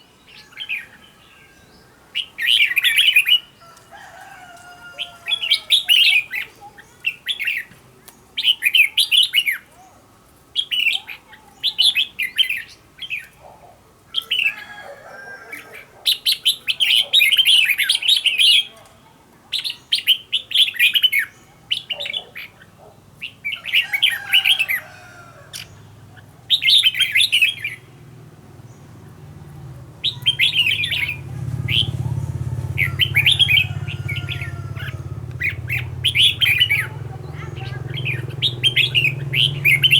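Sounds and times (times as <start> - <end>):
bird singing warbling phrases: 0.0 - 3.6, 5.2 - 7.7, 10.6 - 13.4, 25.6 - 28.0, 28.6 - 39.9.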